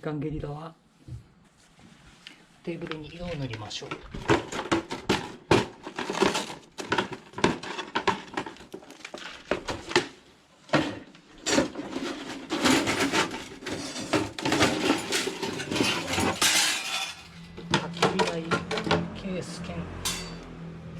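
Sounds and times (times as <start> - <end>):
knocks and metallic clinks: 20.0 - 20.6.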